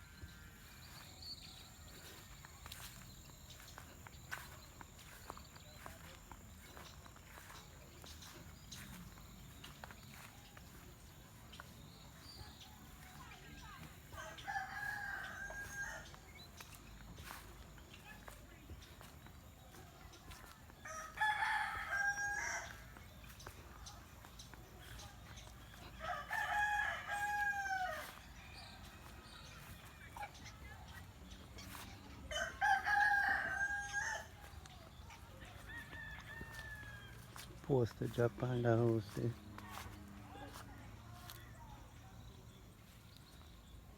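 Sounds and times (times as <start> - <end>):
rooster crowing: 14.1 - 16.2, 20.8 - 22.9, 26.0 - 28.2, 32.3 - 34.3, 35.6 - 37.4.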